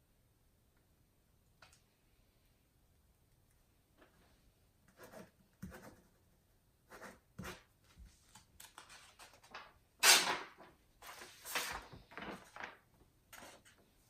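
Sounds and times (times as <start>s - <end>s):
rustling and handling noises: 7.5s - 14.0s.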